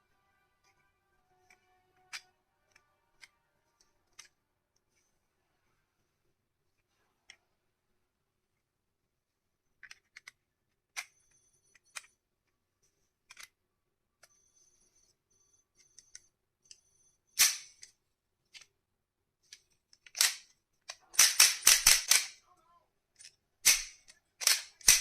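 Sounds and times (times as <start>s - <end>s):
toy pistol clicks and rattles: 19.9s - 22.4s, 23.2s - 25.0s
toy pistol sharp clacks: 21.1s - 22.4s, 23.6s - 25.0s.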